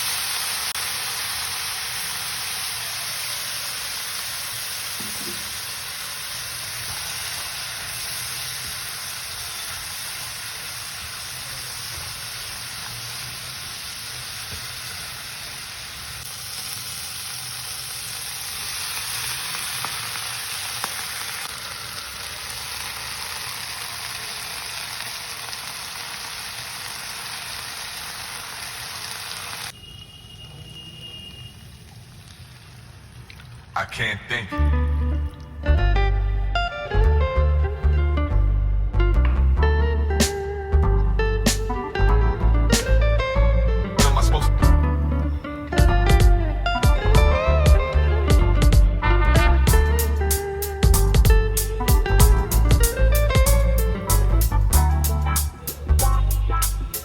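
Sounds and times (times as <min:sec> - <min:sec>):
food sizzling in a pan: 0:00.0 - 0:33.6.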